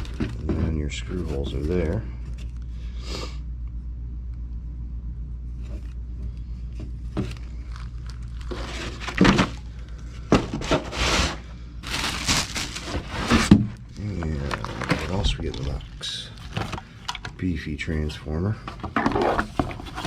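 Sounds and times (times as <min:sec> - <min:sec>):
packaging rustling and scraping: 0:00.0 - 0:02.6, 0:05.6 - 0:17.4, 0:18.6 - 0:20.0
steady low hum: 0:00.0 - 0:20.0.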